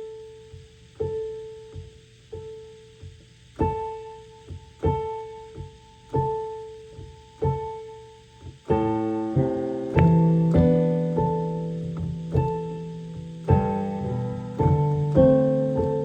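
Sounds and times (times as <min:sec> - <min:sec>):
piano playing: 0:03.6 - 0:16.0.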